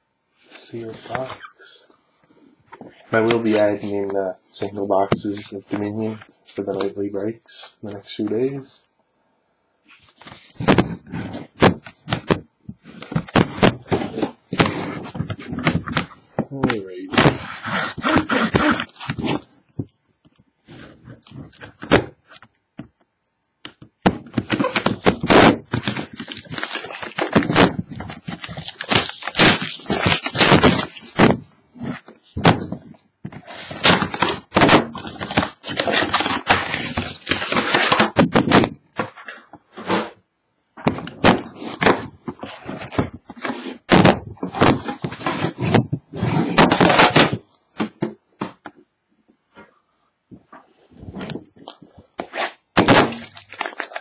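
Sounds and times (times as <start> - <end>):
shrink-wrap crinkling and tearing: 17.2 - 19.4, 24.4 - 31.2, 33.4 - 38.6, 51.6 - 54.0.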